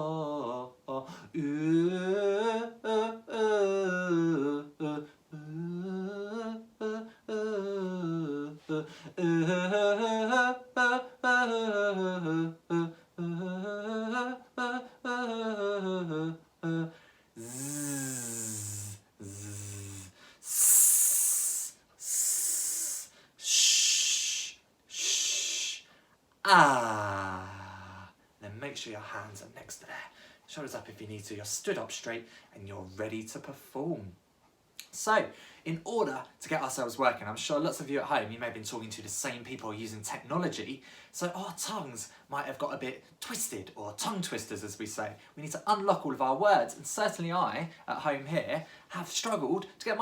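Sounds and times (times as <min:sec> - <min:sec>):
person singing vocal warm-up glides: 0:00.0 - 0:28.2
short breaths: 0:16.9 - 0:26.8, 0:35.4 - 0:35.7, 0:40.8 - 0:41.1
hissing exhalations: 0:17.4 - 0:26.0.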